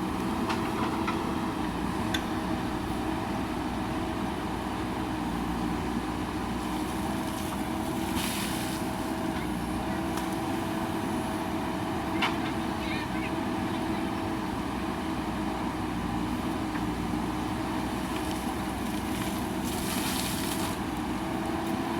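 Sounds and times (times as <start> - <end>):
diesel engine running: 0.0 - 21.9.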